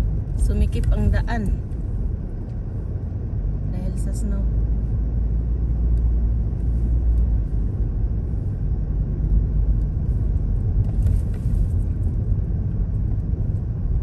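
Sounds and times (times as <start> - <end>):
car driving road noise: 0.0 - 14.0.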